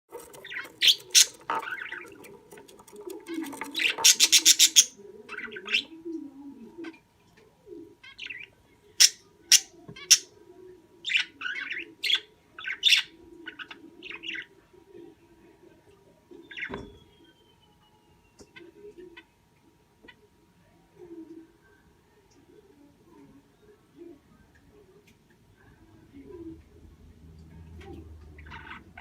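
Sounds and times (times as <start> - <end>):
budgerigar chirping: 0.4 - 2.0, 3.8 - 5.9, 9.0 - 10.3.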